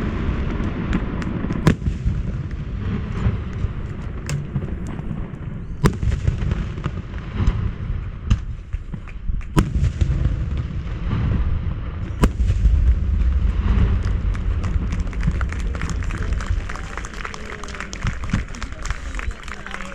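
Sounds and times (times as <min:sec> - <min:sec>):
sharp loud firework reports: 0:00.0 - 0:08.6, 0:09.6 - 0:15.0
fireworks shell bursts rumbling: 0:01.2 - 0:10.6, 0:12.0 - 0:14.8
rapid firework crackling: 0:12.2 - 0:15.3.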